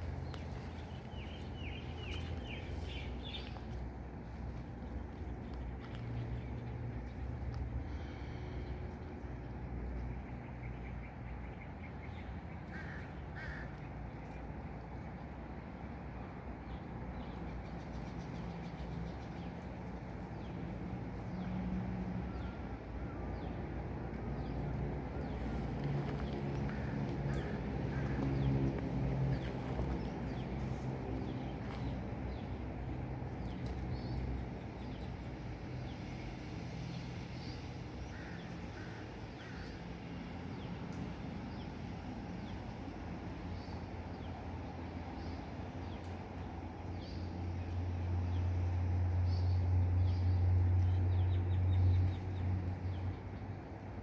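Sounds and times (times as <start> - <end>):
steady low rumble: 13.7 - 35.6.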